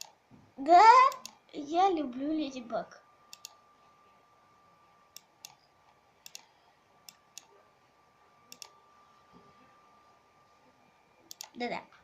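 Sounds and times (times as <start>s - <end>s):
quiet sharp clicks: 3.3s - 3.6s, 6.2s - 6.5s, 8.5s - 8.8s, 11.3s - 11.6s.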